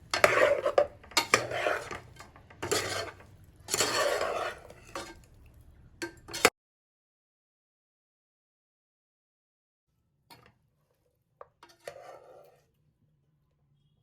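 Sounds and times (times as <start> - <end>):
utensil scraping a pan: 0.0 - 5.3, 6.0 - 6.5, 10.4 - 12.8.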